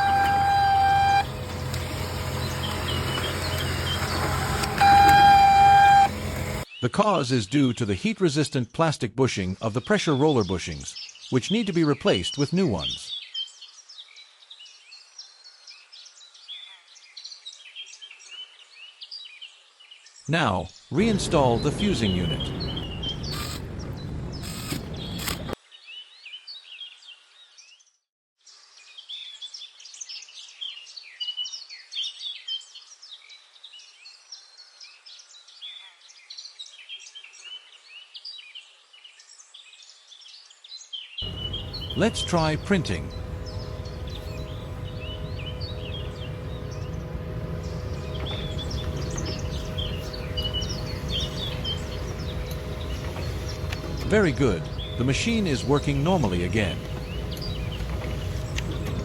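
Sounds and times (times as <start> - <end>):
laser printer humming: 0.0 - 6.6, 21.0 - 25.6, 41.2 - 59.0
small birds chirping: 0.0 - 6.6, 21.0 - 25.6, 41.2 - 59.0.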